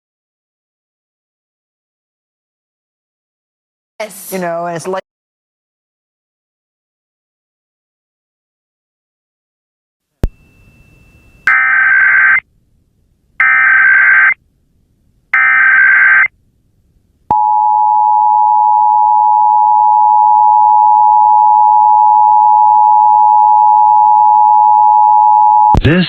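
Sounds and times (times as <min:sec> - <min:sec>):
digital data bursts: 0:11.4 - 0:12.4.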